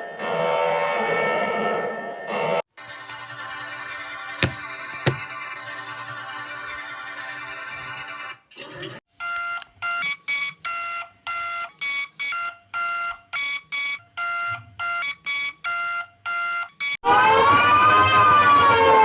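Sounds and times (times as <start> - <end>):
electronic alarm beeping: 9.2 - 17.0
wailing siren: 17.0 - 19.0.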